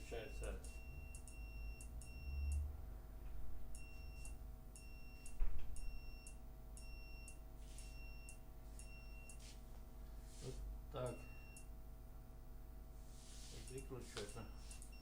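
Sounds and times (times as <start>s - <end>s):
buzzer short high beeps: 0.1s - 2.7s, 3.8s - 9.4s.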